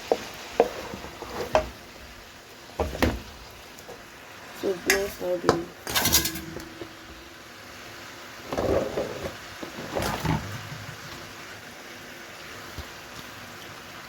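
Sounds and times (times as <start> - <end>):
food sizzling in a frying pan: 0.0 - 14.0
spatula scraping a pan: 0.1 - 1.8, 4.8 - 7.3, 8.4 - 11.3.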